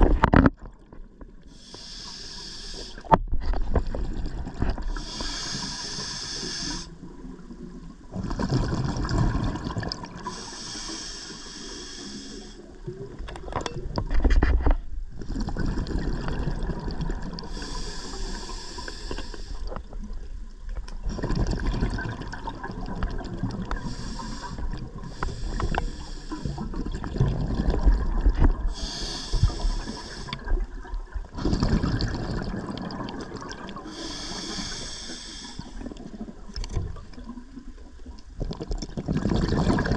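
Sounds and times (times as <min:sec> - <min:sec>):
bubbling exhaust underwater: 0:00.0 - 0:14.2, 0:15.1 - 0:39.9
hissing regulator inhale: 0:01.5 - 0:03.1, 0:04.9 - 0:07.0, 0:10.2 - 0:12.8, 0:17.4 - 0:19.8, 0:23.6 - 0:27.0, 0:28.7 - 0:30.6, 0:33.8 - 0:35.9.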